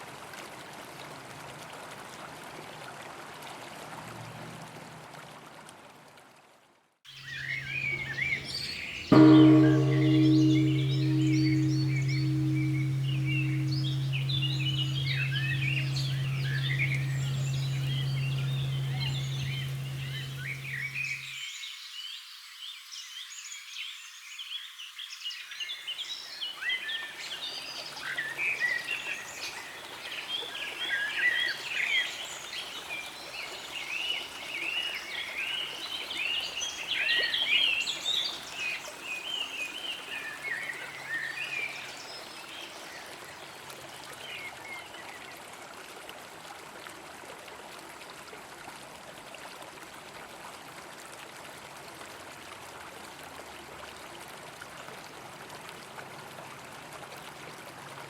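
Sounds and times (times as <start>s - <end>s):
bell humming: 7.2s - 21.3s.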